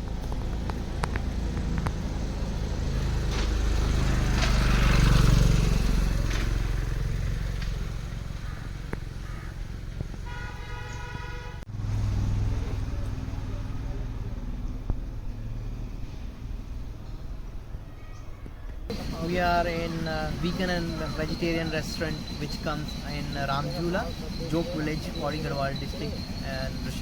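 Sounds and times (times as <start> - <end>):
vehicle passing: 0.0 - 18.0, 18.8 - 27.0
car horn honking: 10.2 - 11.7.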